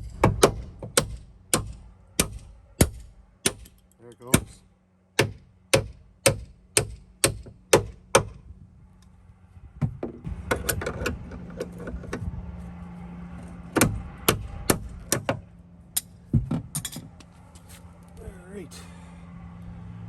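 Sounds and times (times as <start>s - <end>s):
metal clinks and scraping: 16.0s - 17.8s.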